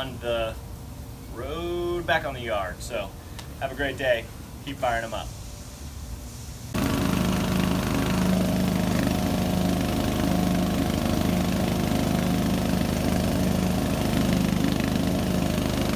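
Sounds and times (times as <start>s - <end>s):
mower engine running: 6.8s - 15.9s.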